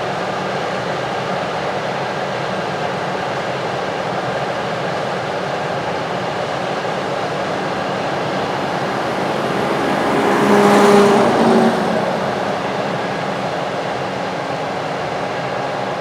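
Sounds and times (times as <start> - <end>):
farm vehicle driving past: 5.6 - 16.0.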